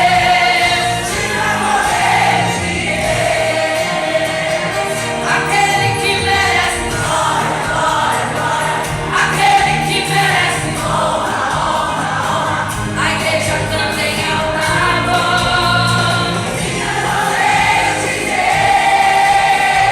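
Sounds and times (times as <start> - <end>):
choir singing gospel song: 0.0 - 19.9
musical accompaniment: 0.0 - 19.9.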